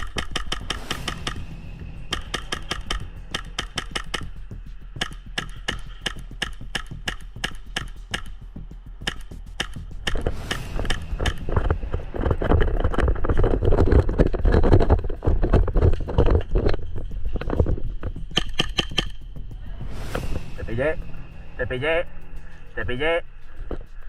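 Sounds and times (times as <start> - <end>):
footsteps and rattling gear: 0.0 - 19.6
heavy rustling and thudding: 10.2 - 18.4.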